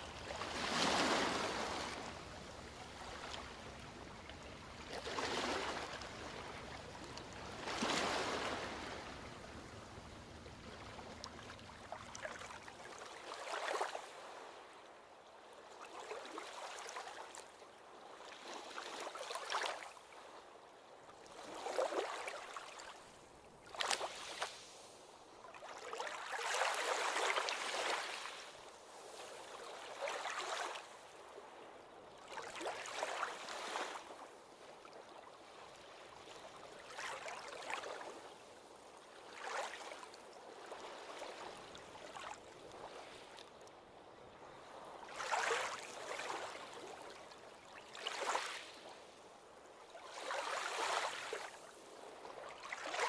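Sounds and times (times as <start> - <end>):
ocean waves washing onto beach: 0.0 - 14.4.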